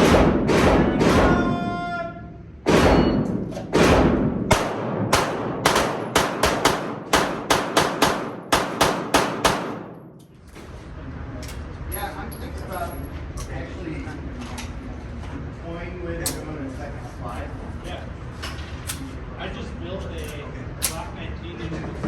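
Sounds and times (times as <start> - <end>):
pistol shots echoing: 0.0 - 1.5, 2.7 - 10.2.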